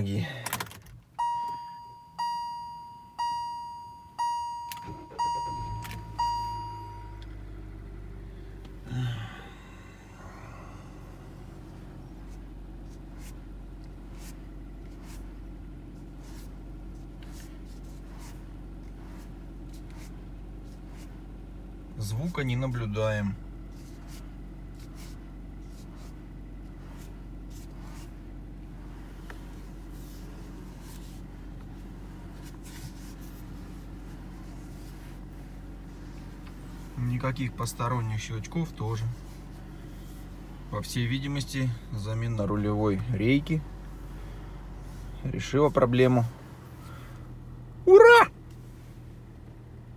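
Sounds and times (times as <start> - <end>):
car engine idling: 0.0 - 49.9.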